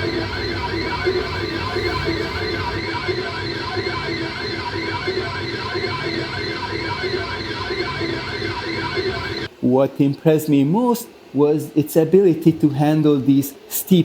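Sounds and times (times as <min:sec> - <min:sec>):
stepper motors whining: 0:00.0 - 0:09.5
cooling fans hissing: 0:00.0 - 0:14.0.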